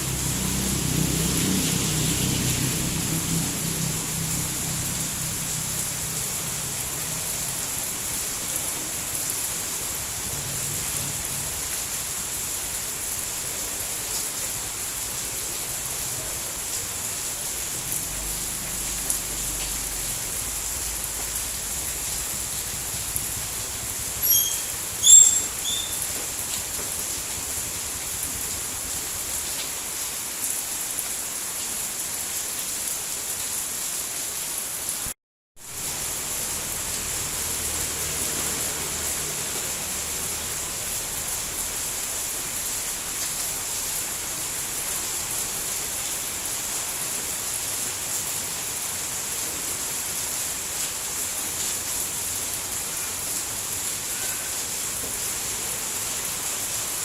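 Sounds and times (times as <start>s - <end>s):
steady rain falling: 0.0s - 57.0s
short high-pitched chirps: 24.2s - 26.0s.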